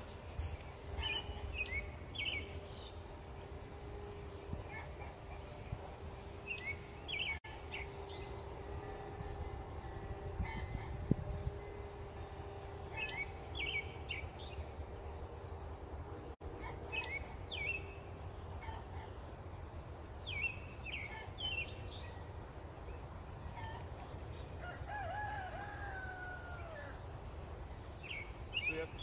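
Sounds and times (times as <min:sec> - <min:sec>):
birds chirping: 0:16.0 - 0:27.0, 0:27.6 - 0:29.0.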